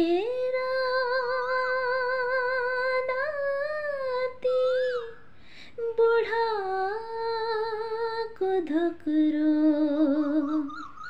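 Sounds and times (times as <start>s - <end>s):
woman singing unaccompanied: 0.0s - 11.0s
singer breathing in: 5.3s - 5.8s.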